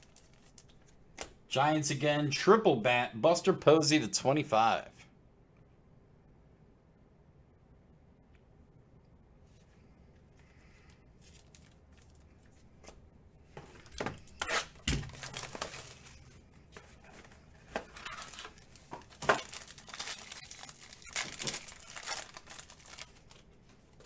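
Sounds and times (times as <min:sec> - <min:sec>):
plastic wrapping crinkling: 0:00.0 - 0:01.0, 0:11.2 - 0:12.5, 0:13.6 - 0:24.0.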